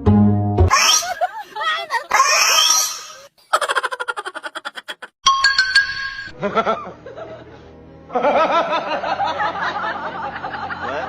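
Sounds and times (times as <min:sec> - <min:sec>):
music: 0:00.0 - 0:00.7, 0:05.3 - 0:11.0
laughter: 0:01.0 - 0:02.2, 0:03.5 - 0:05.2, 0:06.4 - 0:11.0
chime-like tones: 0:05.2 - 0:06.4.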